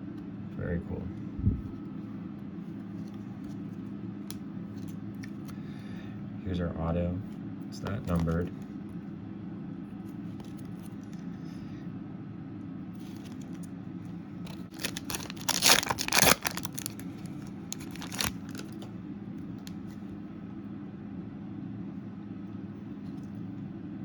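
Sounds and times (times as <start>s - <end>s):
low background hum: 0.0s - 24.0s
foil wrapper tearing and crinkling: 14.5s - 18.8s.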